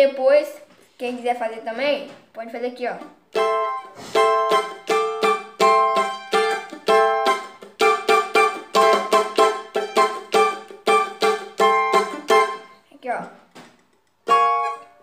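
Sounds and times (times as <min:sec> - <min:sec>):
plucked string chords: 0:03.1 - 0:12.8, 0:14.0 - 0:15.0.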